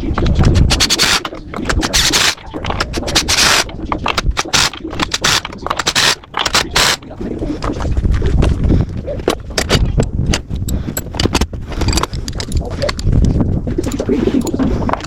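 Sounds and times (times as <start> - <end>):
rasping scraping strokes: 0.0 - 7.9.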